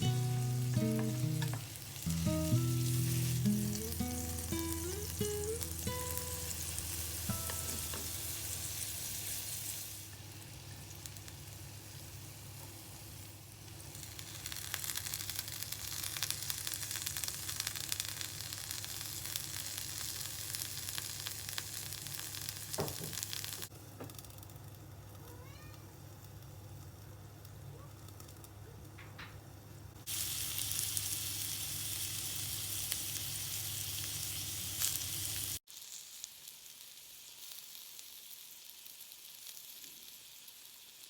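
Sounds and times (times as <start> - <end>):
musical notes: 0.0 - 8.6
patties sizzling in a skillet: 0.0 - 28.6, 29.5 - 41.0.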